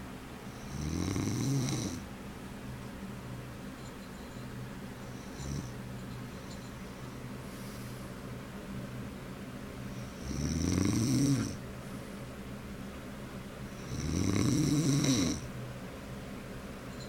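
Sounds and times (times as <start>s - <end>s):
man snoring: 0.6s - 2.0s, 5.2s - 5.7s, 10.0s - 11.6s, 13.7s - 15.5s.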